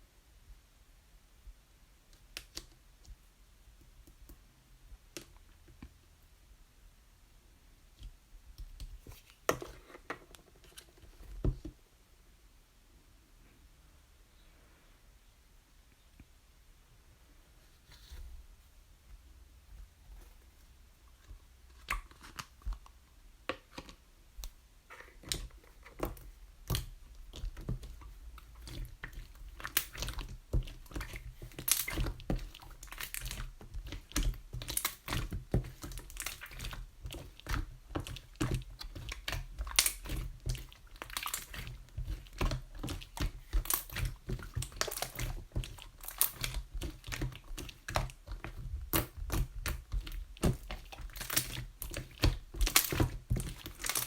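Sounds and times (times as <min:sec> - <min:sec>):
slime clicking and popping: 0:26.6 - 0:54.0.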